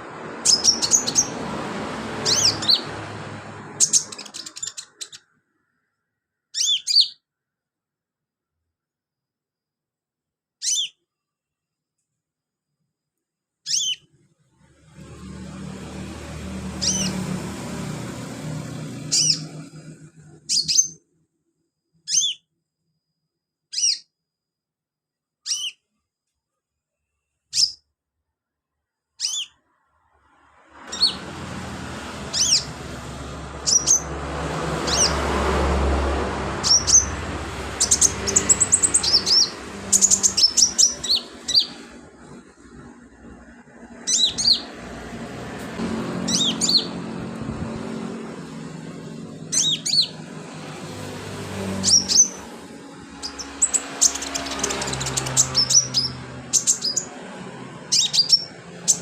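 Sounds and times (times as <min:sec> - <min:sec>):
bird chips and trills: 0:00.4 - 0:01.4, 0:02.2 - 0:02.9, 0:03.8 - 0:05.3, 0:06.5 - 0:07.2, 0:13.7 - 0:14.0, 0:16.4 - 0:17.4, 0:18.9 - 0:21.0, 0:25.4 - 0:25.8, 0:29.2 - 0:29.6, 0:30.9 - 0:33.0, 0:33.6 - 0:34.2, 0:36.6 - 0:42.4, 0:44.0 - 0:44.7, 0:46.2 - 0:47.0, 0:49.5 - 0:50.2, 0:51.7 - 0:52.6, 0:53.2 - 0:57.2, 0:57.9 - 0:59.0.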